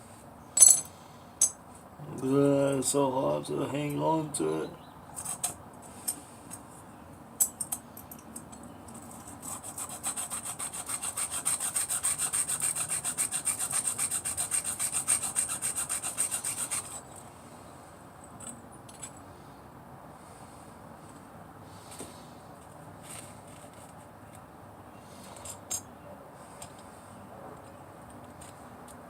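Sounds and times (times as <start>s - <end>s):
blade rubbing on sharpening surface: 9.4s - 17.1s.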